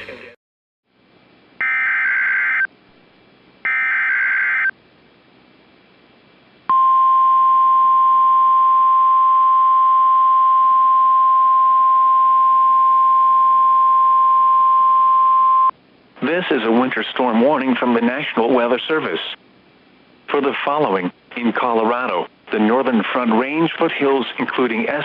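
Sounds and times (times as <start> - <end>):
steady warning alarm tone: 1.6 - 2.7, 3.7 - 4.7.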